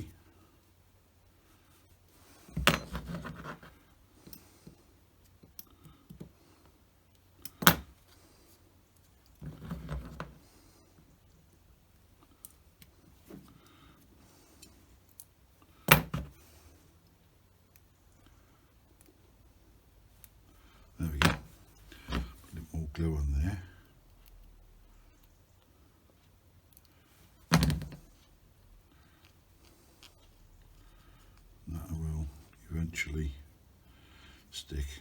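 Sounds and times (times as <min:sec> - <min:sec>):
knocks and clatters of parts: 0:27.5 - 0:28.1.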